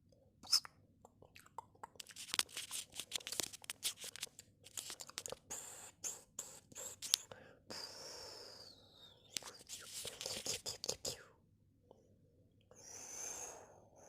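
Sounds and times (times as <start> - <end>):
crackling and crunching by hand: 1.4 - 5.4.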